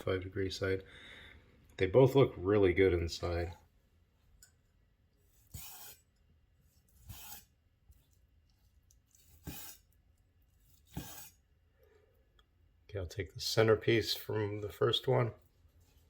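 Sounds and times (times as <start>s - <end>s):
knife slicing on cutting board: 5.5s - 6.1s, 7.0s - 7.5s, 9.2s - 9.9s, 10.8s - 11.4s.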